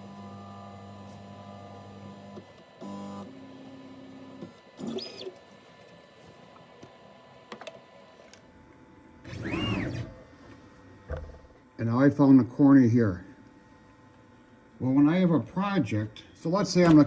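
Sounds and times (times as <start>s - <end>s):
stepper motors humming and whining: 9.2s - 10.3s.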